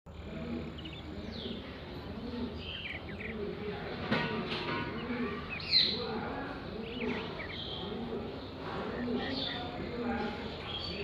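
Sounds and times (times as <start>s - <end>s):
sparrows chirping: 0.1s - 11.0s.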